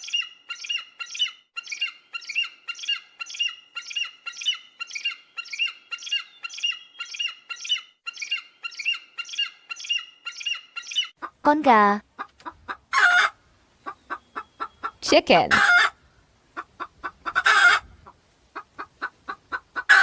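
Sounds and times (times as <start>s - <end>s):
eagle chirping calls: 0.0s - 11.4s, 12.1s - 20.0s.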